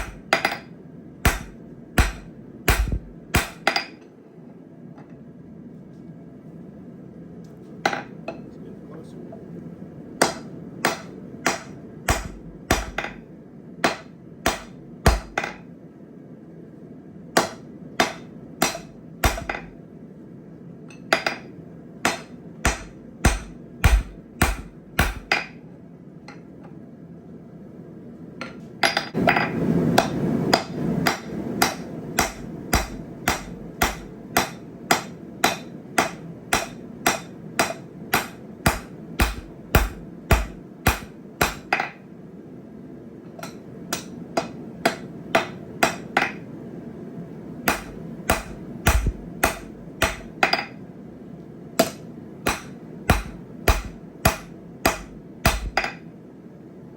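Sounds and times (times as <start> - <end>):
hammer striking steel on anvil: 0.0 - 4.0, 10.2 - 13.2, 13.8 - 15.6, 17.4 - 19.7, 21.0 - 25.6, 28.4 - 42.0, 43.4 - 46.4, 47.7 - 50.8, 51.8 - 56.0.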